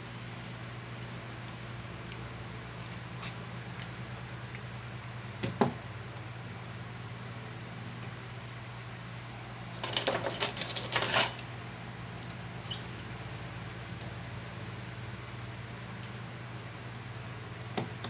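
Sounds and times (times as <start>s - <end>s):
steady low hum: 0.0s - 18.0s
small metal tools clinking: 9.8s - 11.4s.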